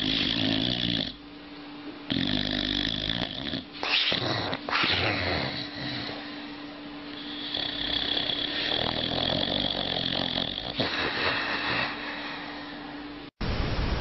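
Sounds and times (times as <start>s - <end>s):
dog snoring: 0.0s - 1.2s, 2.0s - 12.8s.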